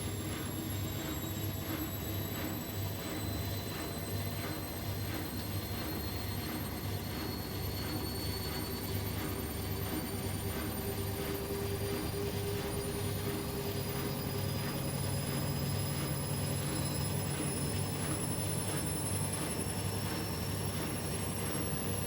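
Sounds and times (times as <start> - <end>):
washing machine motor whine: 0.0 - 22.0.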